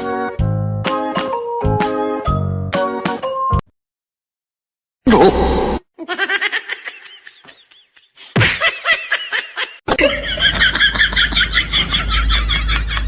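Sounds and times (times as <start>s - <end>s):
high-pitched laughter: 6.0s - 13.0s.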